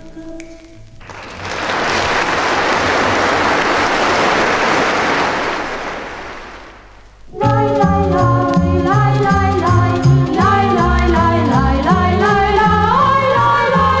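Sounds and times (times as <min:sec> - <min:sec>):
audience applause: 0:01.0 - 0:06.9.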